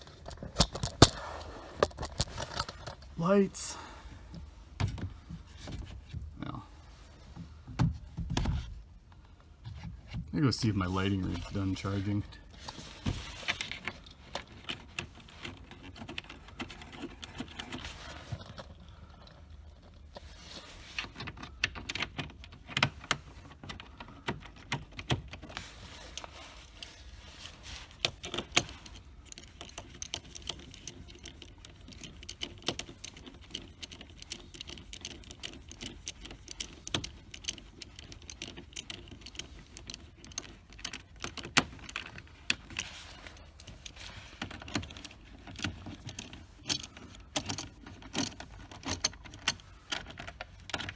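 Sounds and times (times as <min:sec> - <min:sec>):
metal parts clinking and rattling: 0:00.0 - 0:01.2, 0:01.8 - 0:03.1, 0:24.4 - 0:50.9.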